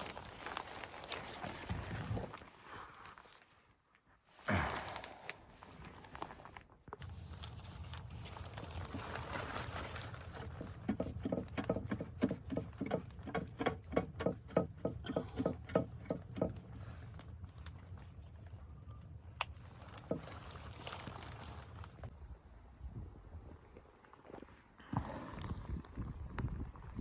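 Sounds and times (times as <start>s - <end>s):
low wind rumble: 7.0s - 23.8s.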